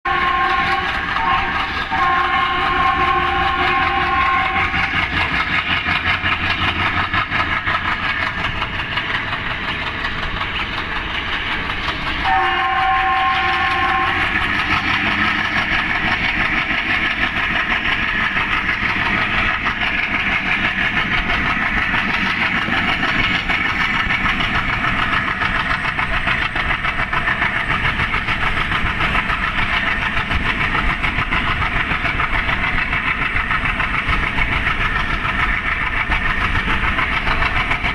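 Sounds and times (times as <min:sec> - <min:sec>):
multi-tone air horn: 0:00.1 - 0:04.9, 0:12.2 - 0:14.4
diesel locomotive engine chugging: 0:00.1 - 0:37.9.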